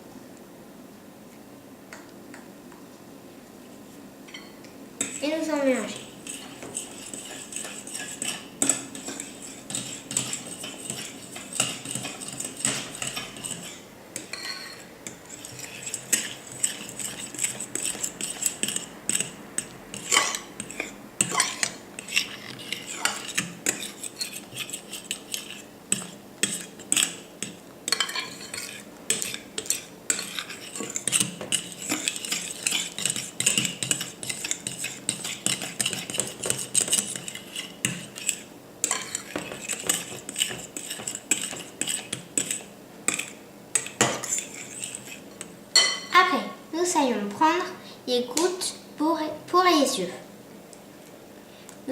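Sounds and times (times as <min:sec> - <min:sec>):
utensil scraping a bowl: 0:04.4 - 0:46.1.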